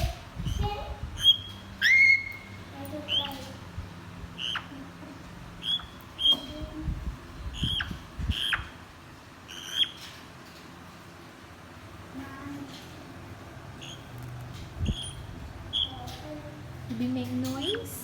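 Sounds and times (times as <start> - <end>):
parrot chirping whistles: 1.2 - 2.6, 5.6 - 6.4.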